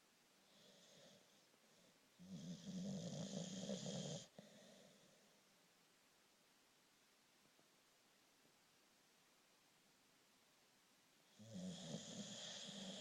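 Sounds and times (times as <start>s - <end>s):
faint breath: 0.4s - 2.4s, 4.2s - 5.5s.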